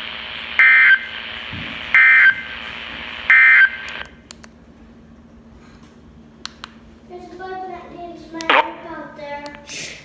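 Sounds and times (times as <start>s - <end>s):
radio background hiss: 0.0s - 4.1s, 8.4s - 8.9s.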